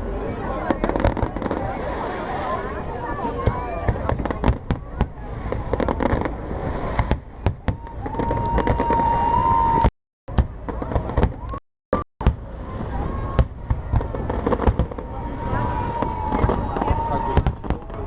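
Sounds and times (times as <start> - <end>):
continuous rumble: 0.0 - 8.8, 10.3 - 11.6, 12.2 - 18.0
fireworks bangs and crackles: 0.0 - 11.6, 12.2 - 18.0
long steady whistle: 7.8 - 9.9.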